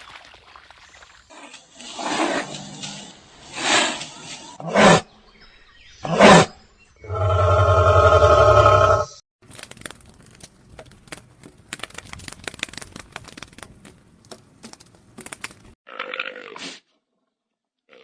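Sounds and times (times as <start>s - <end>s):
crisp crunching and crinkling clicks: 9.4s - 15.8s.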